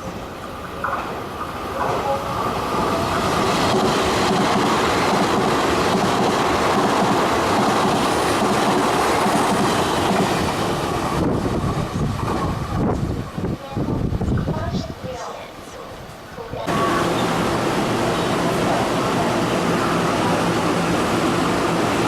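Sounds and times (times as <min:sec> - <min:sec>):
electric train passing: 0:00.0 - 0:14.3, 0:16.6 - 0:22.0.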